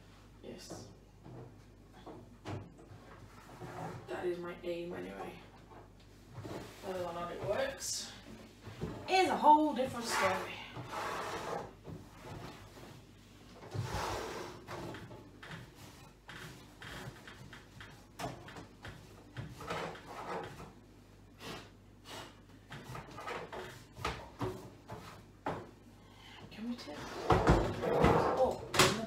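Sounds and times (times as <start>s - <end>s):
microwave being handled and wiped: 5.8s - 25.7s.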